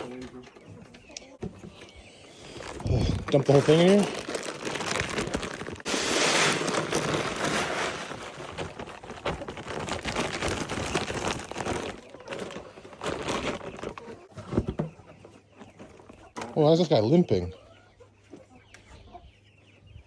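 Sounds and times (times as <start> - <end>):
bag and feed crinkling: 1.8 - 14.3
grain pouring from bag: 2.5 - 13.7.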